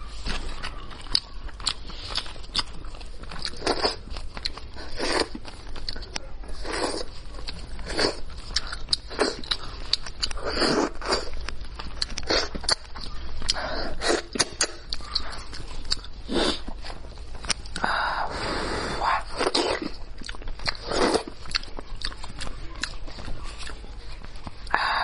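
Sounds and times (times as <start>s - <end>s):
wet chewing and sucking: 0.0s - 25.0s
small mouth clicks: 11.2s - 16.7s.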